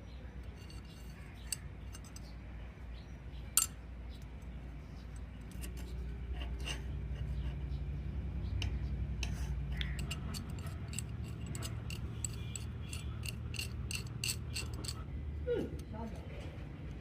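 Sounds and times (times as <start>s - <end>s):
metal wrench clicking and clinking: 0.6s - 2.3s, 3.6s - 3.8s, 9.8s - 15.0s.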